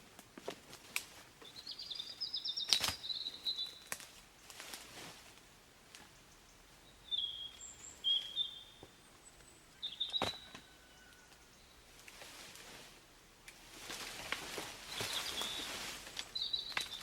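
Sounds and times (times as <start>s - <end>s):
birds chirping: 1.4s - 4.5s, 6.0s - 12.0s, 14.8s - 17.0s.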